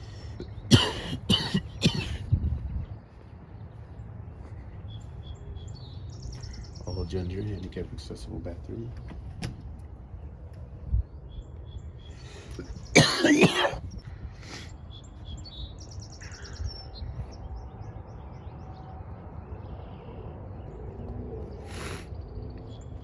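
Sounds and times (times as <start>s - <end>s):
birds chirping: 0.0s - 23.0s
person coughing: 0.7s - 2.3s, 12.6s - 13.9s.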